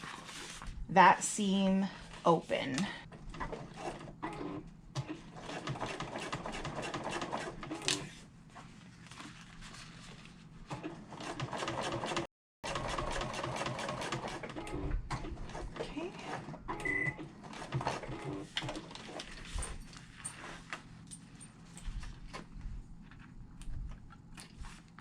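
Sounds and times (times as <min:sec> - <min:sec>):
sewing machine stitching: 0:03.3 - 0:08.0, 0:10.7 - 0:19.2.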